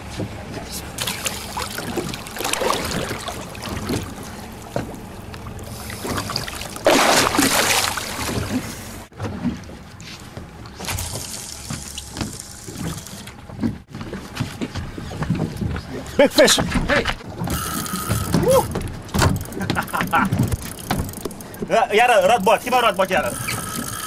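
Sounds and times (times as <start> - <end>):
water trickling and splashing: 0.7 - 13.5.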